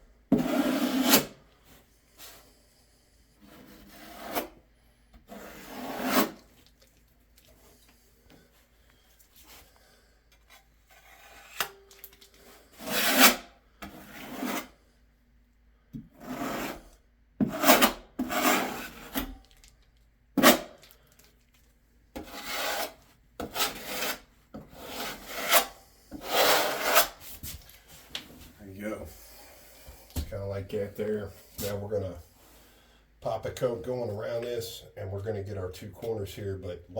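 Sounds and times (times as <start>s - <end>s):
sealant scraping strokes: 5.3s - 6.6s, 16.2s - 19.3s, 22.2s - 28.1s.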